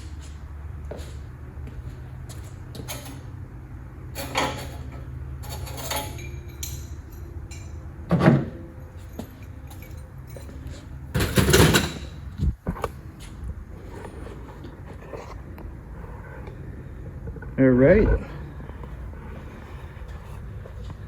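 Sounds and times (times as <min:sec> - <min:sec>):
steady low hum: 0:00.0 - 0:21.0
metal clanking and scraping: 0:04.1 - 0:12.9.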